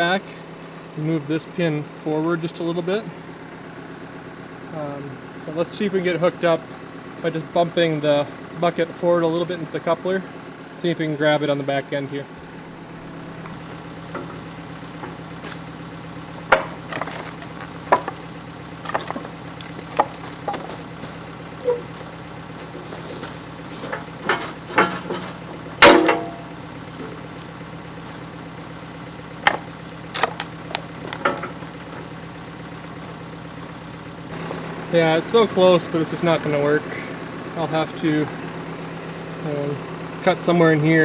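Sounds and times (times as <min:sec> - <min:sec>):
diesel engine running: 0:00.0 - 0:41.0
bucket clanking against coupler: 0:16.4 - 0:32.1.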